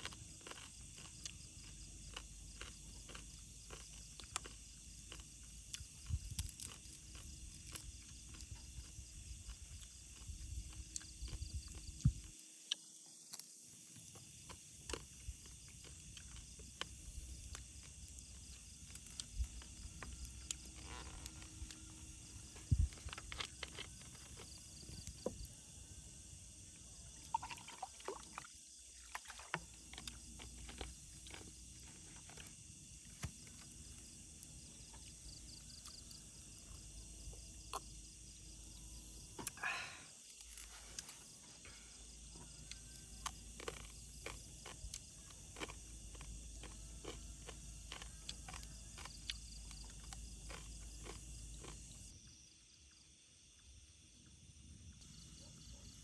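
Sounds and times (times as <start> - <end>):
small clicks and crackles: 5.8 - 8.5.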